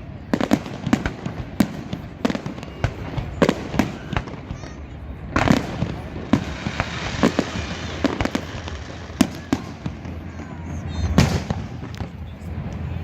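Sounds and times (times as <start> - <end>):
fireworks bangs: 0.0 - 13.0
fireworks crackling: 0.0 - 13.0.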